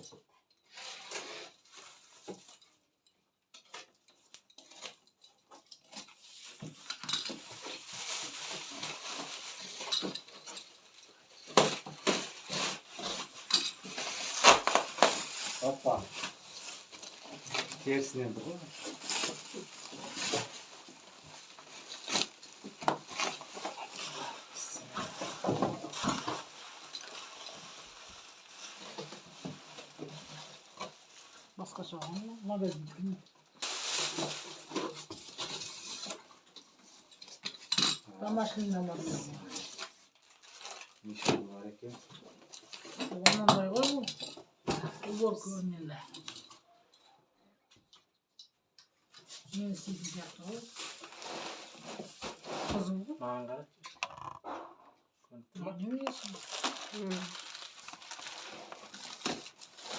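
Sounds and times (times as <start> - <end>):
packaging rustling and scraping: 0.6 - 2.8, 3.6 - 43.2, 49.1 - 54.8, 55.8 - 59.9.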